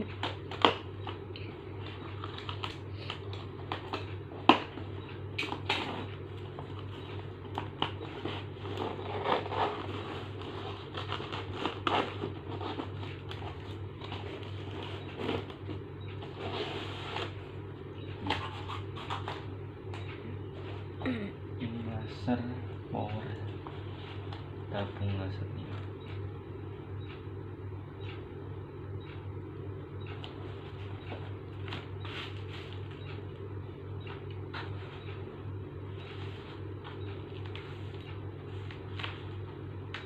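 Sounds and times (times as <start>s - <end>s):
steady low hum: 0.0s - 40.0s
packaging clicks and rustles: 1.8s - 4.8s.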